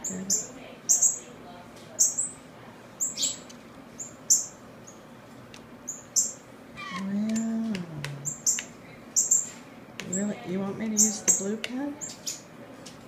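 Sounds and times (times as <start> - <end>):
fledgling songbirds chirping: 3.0 - 5.1, 5.8 - 12.5
person humming: 6.9 - 8.4.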